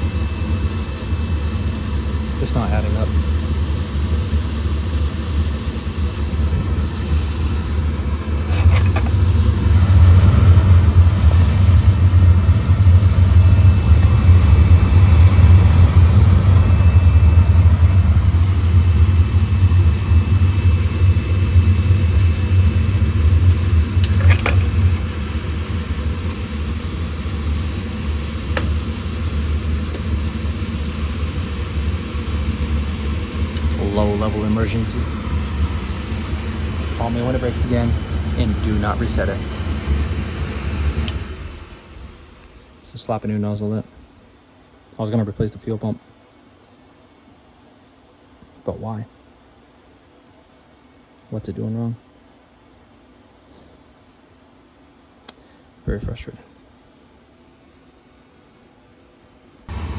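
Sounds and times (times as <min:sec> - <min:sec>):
oil burner rumbling: 0:00.0 - 0:44.2, 0:59.6 - 0:59.9.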